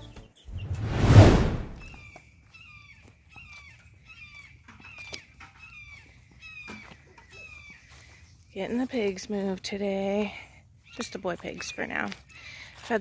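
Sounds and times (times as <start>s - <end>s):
loud whoosh: 0.5s - 2.0s.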